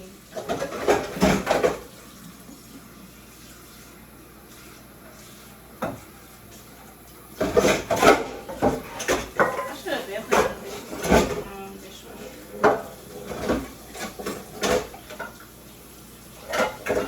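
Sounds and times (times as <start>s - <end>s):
kitchen tap running: 0.0s - 17.0s
dishes clattering: 0.3s - 2.0s, 5.7s - 6.2s, 7.4s - 15.6s, 16.3s - 17.0s.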